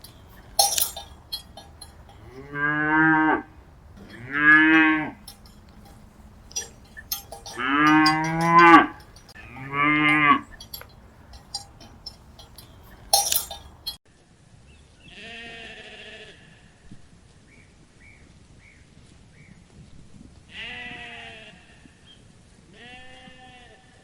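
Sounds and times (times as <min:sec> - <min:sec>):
clatter of knocks: 0:00.0 - 0:02.5, 0:03.7 - 0:14.0.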